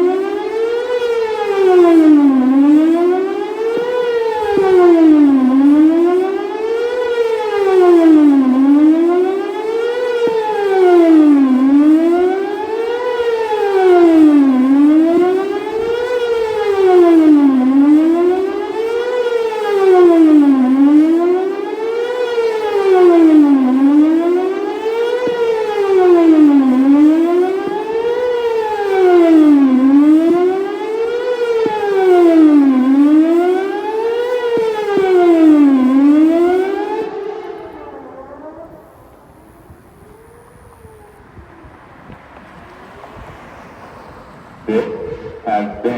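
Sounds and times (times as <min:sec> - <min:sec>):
outdoor warning siren wailing: 0:00.0 - 0:45.9.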